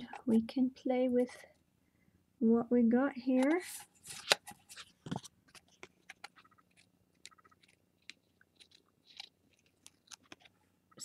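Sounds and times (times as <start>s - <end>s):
paper clicks and crackles: 4.1s - 11.0s.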